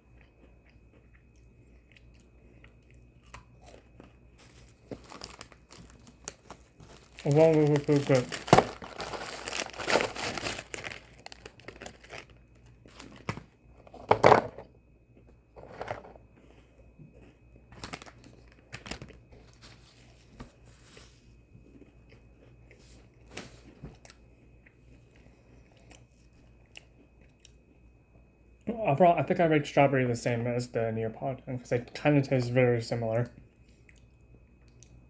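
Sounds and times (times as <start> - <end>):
person chewing crunchy cookies: 0.0 - 14.1, 15.1 - 20.2, 21.4 - 27.9, 33.5 - 35.0.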